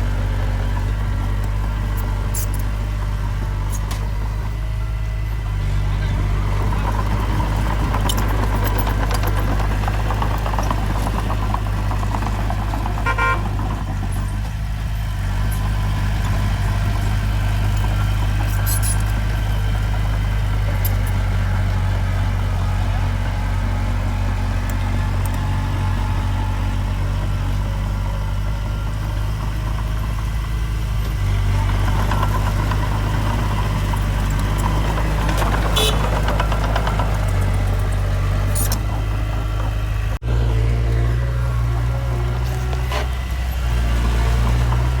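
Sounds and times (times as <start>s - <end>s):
diesel engine under load: 0.0s - 45.0s
metal clinks: 17.7s - 19.6s.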